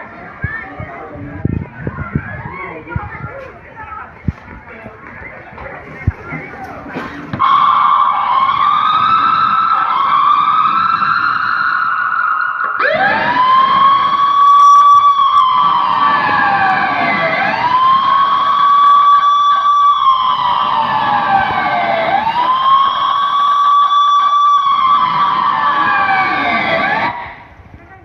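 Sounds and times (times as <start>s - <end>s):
wailing siren: 7.3s - 27.6s.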